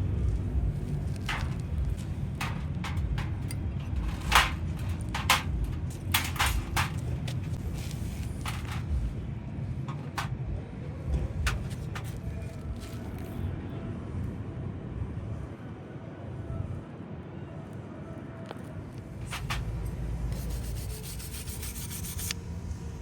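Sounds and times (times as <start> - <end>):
steady low rumble: 0.0 - 13.2
tools and metal parts clicking: 1.1 - 9.0, 9.9 - 10.4, 11.5 - 13.0, 19.2 - 22.3.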